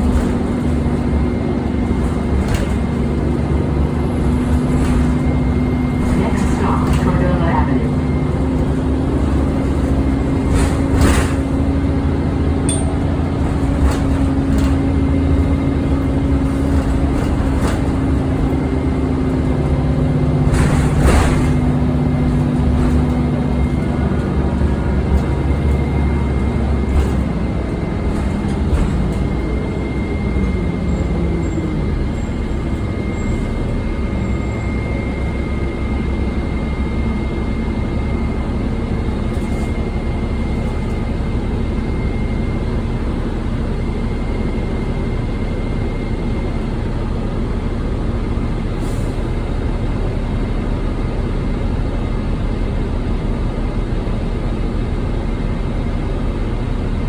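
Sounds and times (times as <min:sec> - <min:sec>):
rattles and knocks: 0:00.0 - 0:03.7, 0:09.0 - 0:18.8
bus diesel engine running: 0:00.0 - 0:57.0.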